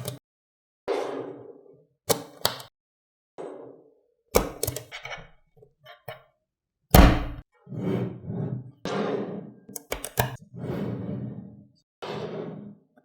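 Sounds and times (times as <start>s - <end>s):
handling clicks and knocks: 4.4s - 5.1s, 9.8s - 10.4s
loud thunk: 7.0s - 7.4s.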